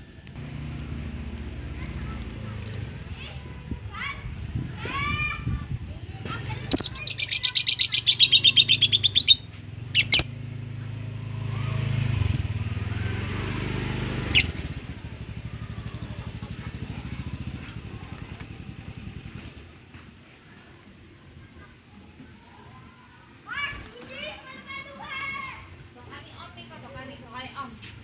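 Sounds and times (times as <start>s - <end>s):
low engine hum: 0.0s - 7.2s, 7.9s - 20.2s
lovebirds chirping shrilly: 6.6s - 10.4s, 14.3s - 14.8s.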